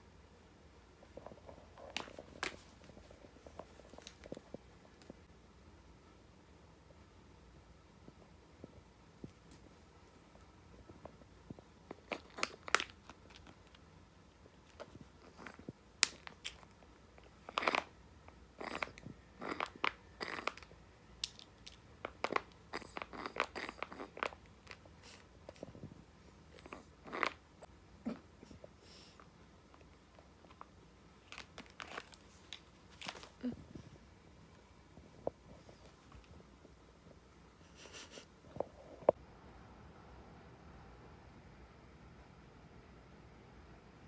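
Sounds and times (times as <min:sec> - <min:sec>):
kitten chewing crunches: 0:01.1 - 0:04.6, 0:10.8 - 0:18.0, 0:18.6 - 0:29.2, 0:29.8 - 0:33.7.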